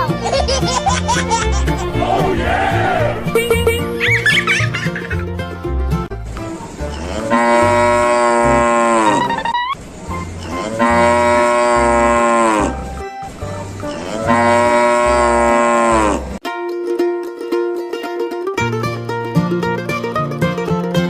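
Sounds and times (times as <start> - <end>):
cow mooing: 7.0 - 9.5, 10.4 - 12.8, 14.0 - 16.4.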